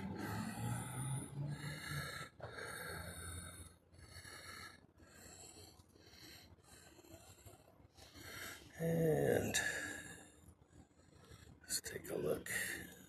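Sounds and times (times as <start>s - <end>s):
person breathing close to microphone: 0.0s - 11.7s.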